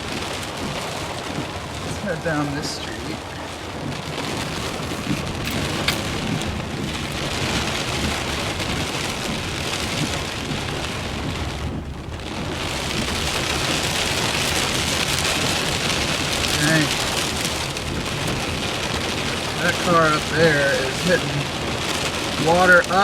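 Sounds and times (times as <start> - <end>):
heavy rain on a vehicle: 0.0 - 23.0
low rumble: 2.8 - 18.7.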